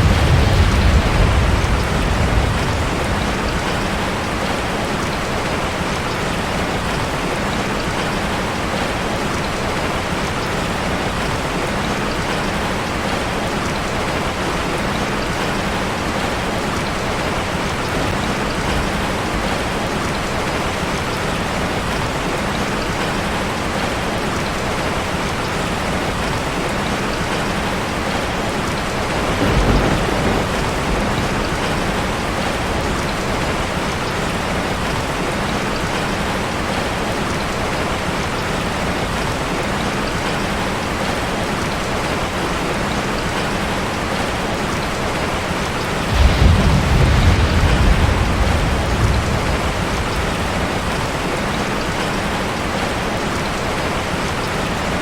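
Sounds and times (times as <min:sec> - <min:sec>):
thunder rumble: 0:00.0 - 0:05.5, 0:28.9 - 0:34.2, 0:46.0 - 0:52.0
rain falling on street: 0:00.0 - 0:55.0.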